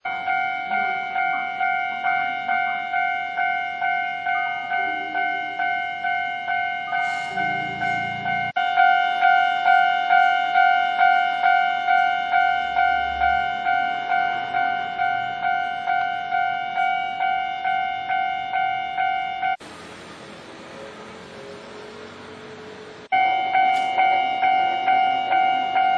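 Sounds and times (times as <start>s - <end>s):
level crossing warning bell: 0.0s - 19.7s, 23.1s - 25.9s.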